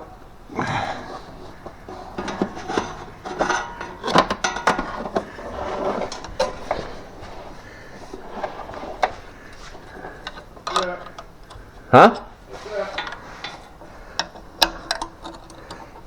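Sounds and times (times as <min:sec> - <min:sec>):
cable scraping under carpet: 0:00.6 - 0:10.6
cable clicks and knocks: 0:01.0 - 0:16.0.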